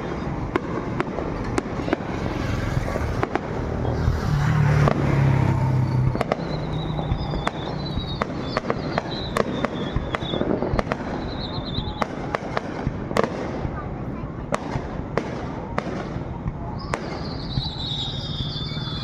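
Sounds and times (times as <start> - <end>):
background rumble: 0.0 - 10.4
fireworks bangs and pops: 0.0 - 19.0
wavering high whistle: 3.9 - 12.2, 16.7 - 19.0.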